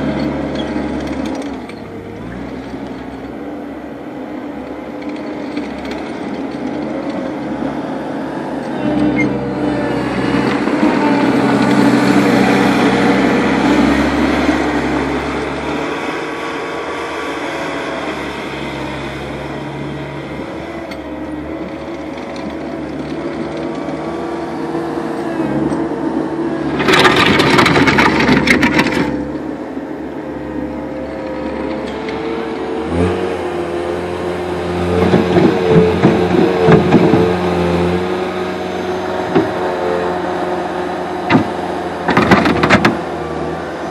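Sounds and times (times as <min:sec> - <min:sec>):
diesel engine revving: 0:00.0 - 0:43.9
rattling clanks: 0:26.8 - 0:29.3.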